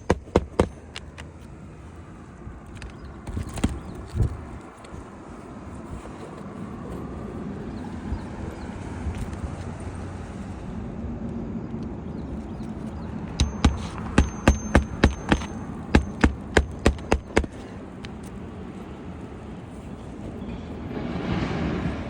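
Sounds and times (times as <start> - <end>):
sharp metallic knocks: 0.0 - 1.0, 13.3 - 18.2.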